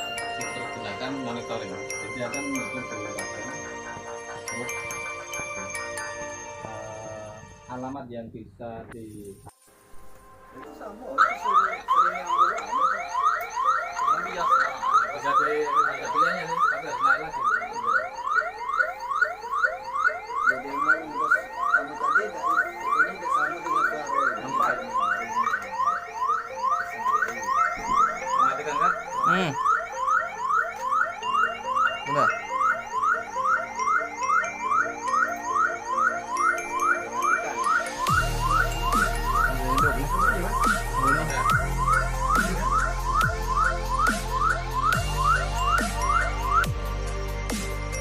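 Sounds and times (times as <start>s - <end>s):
electronic warning siren yelping: 10.0s - 48.0s.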